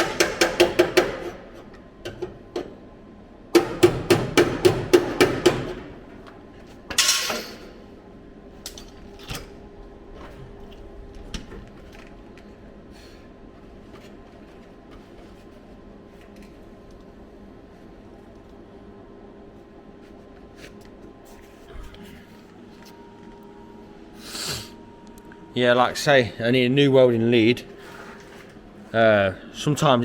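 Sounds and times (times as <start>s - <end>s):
hammer striking steel panel: 0.0s - 1.4s
faint steady hum: 0.0s - 30.0s.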